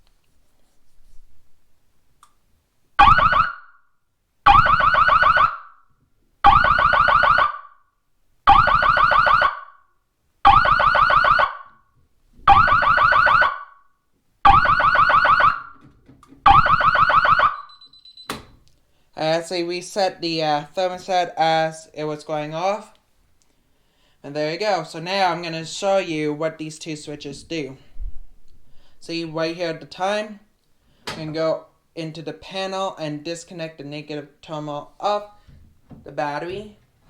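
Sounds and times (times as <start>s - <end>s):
fire alarm siren warbling: 3.0s - 3.8s, 4.4s - 5.8s, 6.4s - 7.8s, 8.5s - 9.8s, 10.4s - 11.8s, 12.4s - 13.8s, 14.4s - 15.8s, 16.4s - 18.4s.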